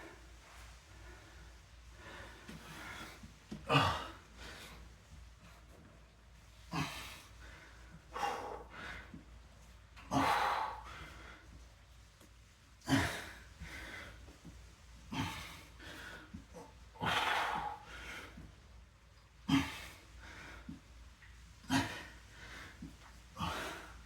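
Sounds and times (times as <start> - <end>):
person breathing hard: 6.7 - 9.4, 10.1 - 11.6, 12.9 - 18.6, 21.7 - 24.0.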